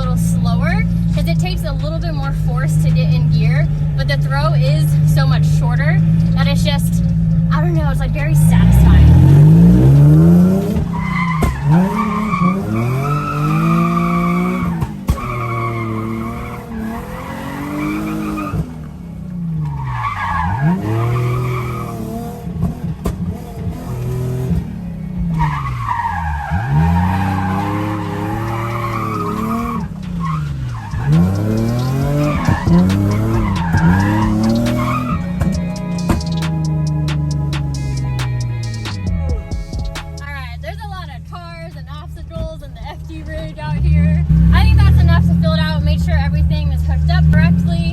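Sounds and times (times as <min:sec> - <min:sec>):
car engine revving: 0:00.0 - 0:47.9
tyres skidding: 0:00.0 - 0:47.9
music: 0:31.7 - 0:40.3.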